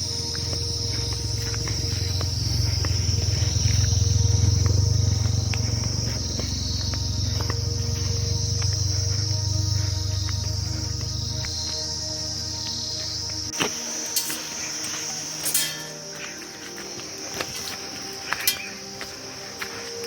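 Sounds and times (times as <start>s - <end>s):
insects droning: 0.0s - 20.0s
low rumble: 0.1s - 11.7s.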